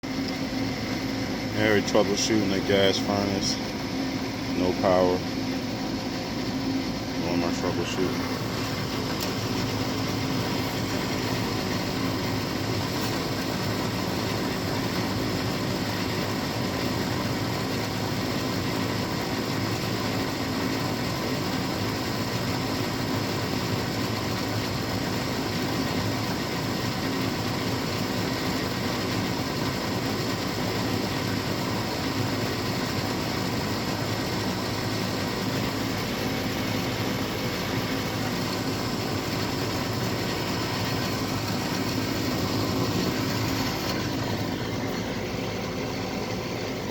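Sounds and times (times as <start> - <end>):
furnace motor humming: 0.0 - 46.9.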